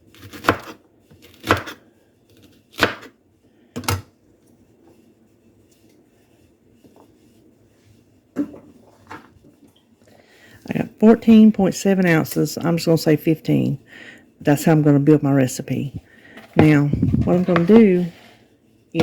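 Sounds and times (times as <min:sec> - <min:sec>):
knife chopping on cutting board: 0:02.7 - 0:03.1.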